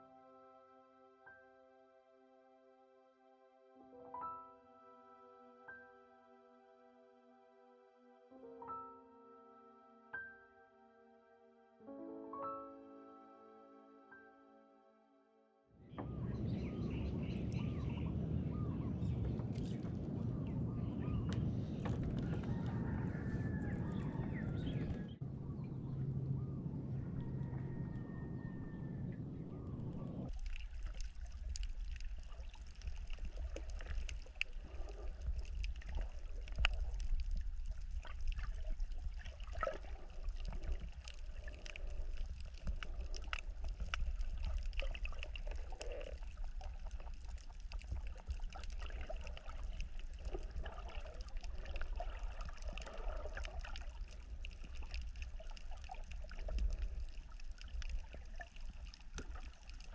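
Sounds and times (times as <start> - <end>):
low rumble: 15.9 - 52.0
water sloshing and trickling: 16.0 - 25.3, 30.2 - 59.9
small splashes: 30.3 - 59.9.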